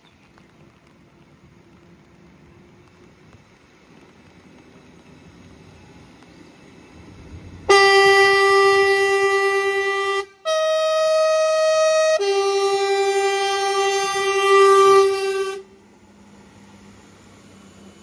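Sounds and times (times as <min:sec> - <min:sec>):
two-tone locomotive air horn: 0:07.7 - 0:15.8.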